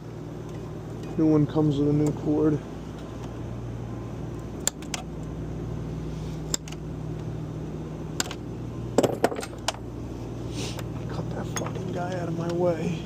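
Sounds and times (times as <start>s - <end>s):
low mechanical hum: 0.0s - 13.0s
sharp clicks of hand work: 4.6s - 5.1s.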